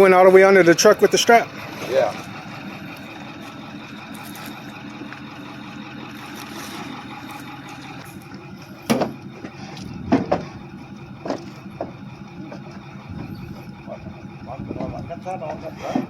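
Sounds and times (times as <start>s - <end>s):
vehicle engine idling: 0.0s - 16.0s
sharp knocks: 8.9s - 10.6s.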